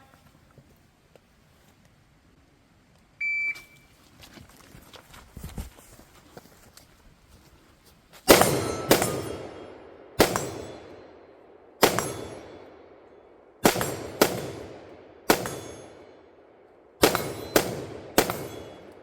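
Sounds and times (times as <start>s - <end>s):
gunshots with ringing decay: 8.3s - 19.0s.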